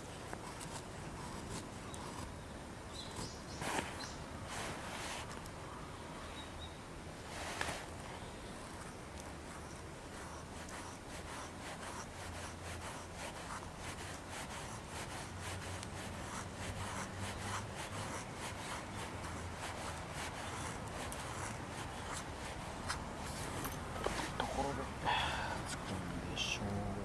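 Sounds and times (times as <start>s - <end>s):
knife shaving wood: 9.1s - 23.1s.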